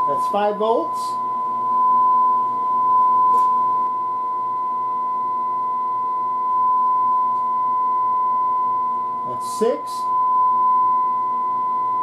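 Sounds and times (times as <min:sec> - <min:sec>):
distorted test tone through loudspeaker: 0:00.0 - 0:04.0, 0:09.1 - 0:12.0.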